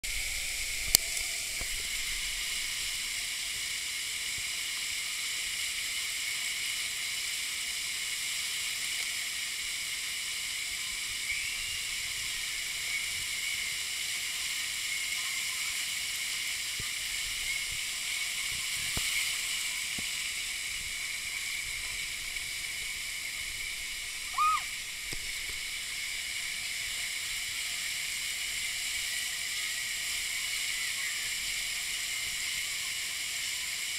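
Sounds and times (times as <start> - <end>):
water running and spraying: 0.0 - 33.9
short chirp-like tone: 24.3 - 24.7.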